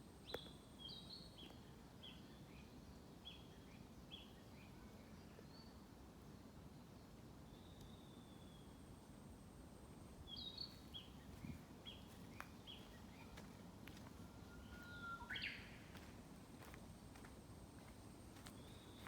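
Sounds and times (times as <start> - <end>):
small songbirds singing: 10.2 - 16.1.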